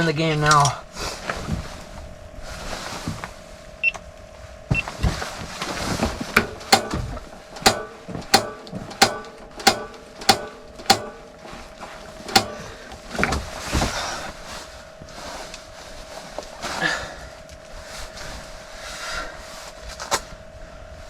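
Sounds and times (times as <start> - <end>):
heater igniter clicking: 6.2 - 13.5.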